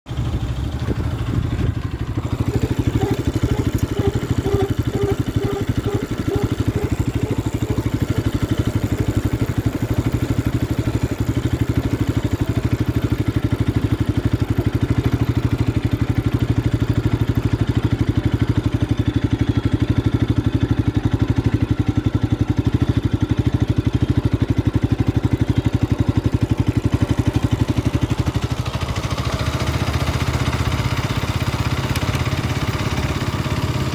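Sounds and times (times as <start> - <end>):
motorcycle engine running: 0.1 - 33.9
squeaking brake: 2.5 - 7.6.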